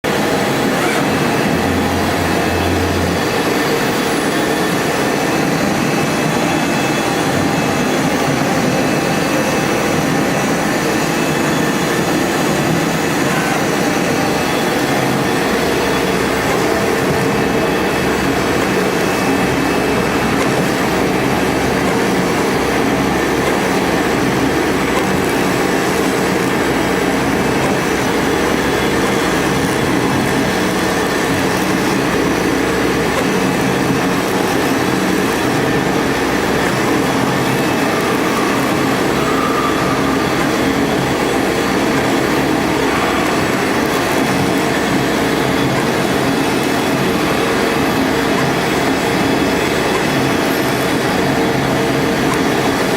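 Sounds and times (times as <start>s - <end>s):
machine cutting foam board: 11.2s - 51.2s.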